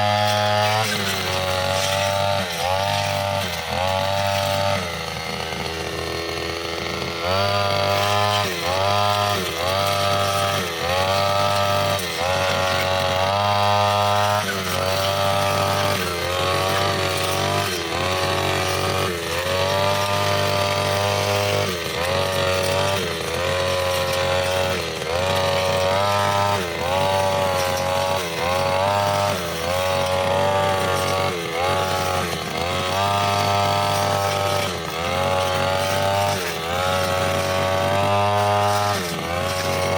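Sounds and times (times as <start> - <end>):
brushcutter cutting grass: 0.0 - 39.9.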